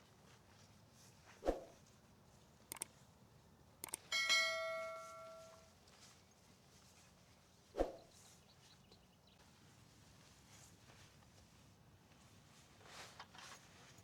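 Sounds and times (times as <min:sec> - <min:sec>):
light clicks: 0:02.7 - 0:02.9, 0:03.8 - 0:04.1
metal object ringing: 0:04.1 - 0:05.6.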